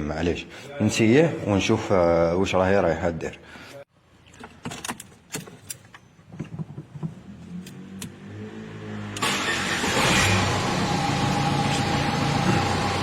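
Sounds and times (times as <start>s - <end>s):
clicks and knocks of handling: 4.3s - 7.2s
car engine cranking and starting: 6.7s - 13.0s.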